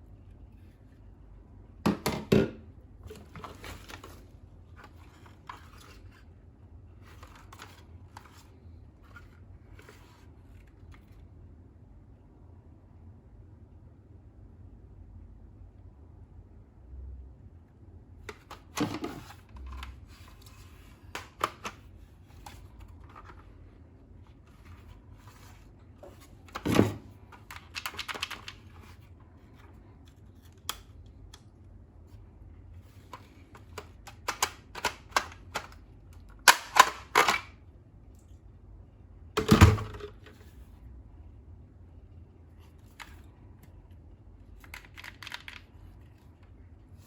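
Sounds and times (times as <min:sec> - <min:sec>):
plastic toy clicks and knocks: 0:33.6 - 0:35.8.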